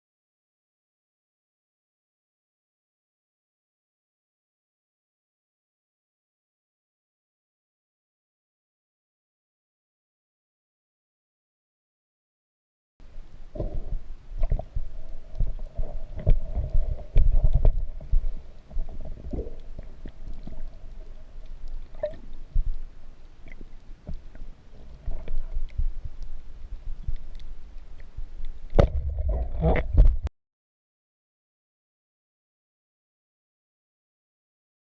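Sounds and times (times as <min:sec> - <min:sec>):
muffled underwater rumbling: 0:13.0 - 0:30.3
clicks and knocks underwater: 0:13.6 - 0:22.8, 0:23.4 - 0:30.3.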